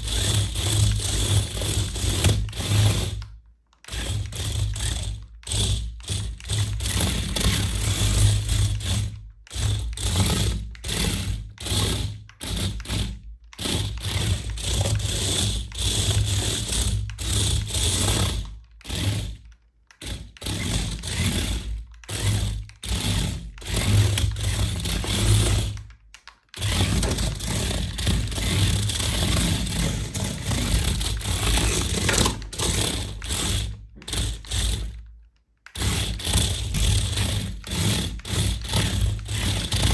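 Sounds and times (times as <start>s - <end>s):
toy car motor whirring: 0.0s - 39.9s.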